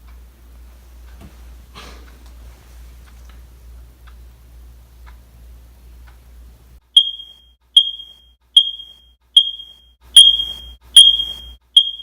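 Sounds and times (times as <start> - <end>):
smoke alarm beeping: 6.9 - 12.0.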